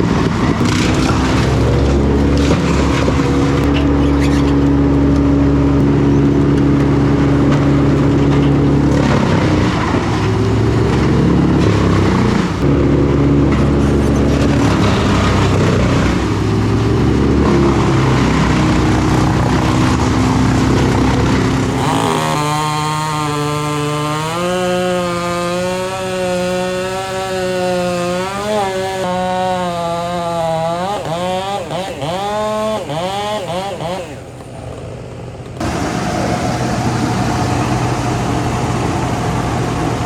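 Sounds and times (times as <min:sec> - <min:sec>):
heavy machinery engine running: 0:00.0 - 0:40.0
higher wavering engine note: 0:35.6 - 0:40.0.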